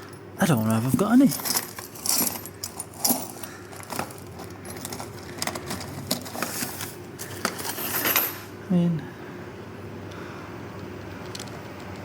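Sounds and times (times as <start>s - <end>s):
metal bolts clinking in bag: 0.0s - 8.5s.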